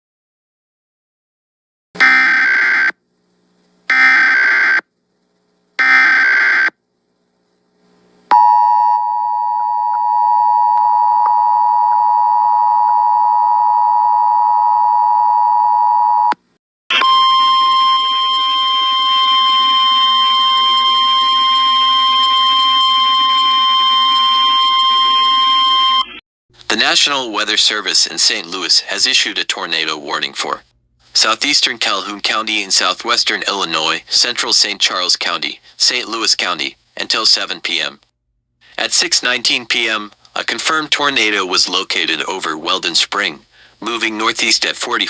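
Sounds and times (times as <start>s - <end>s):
steady tone with hiss: 6.9s - 8.3s.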